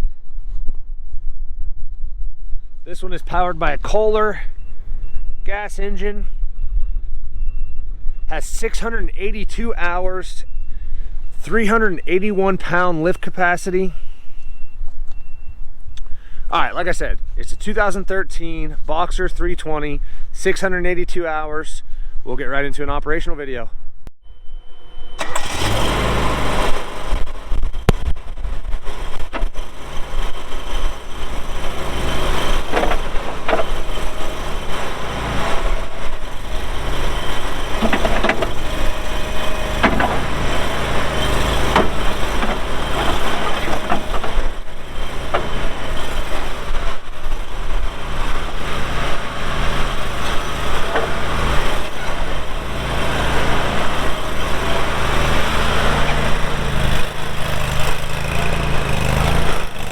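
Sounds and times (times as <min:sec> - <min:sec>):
gas engine running: 0:25.2 - 0:59.9
machine clanks and knocks: 0:31.5 - 0:59.9.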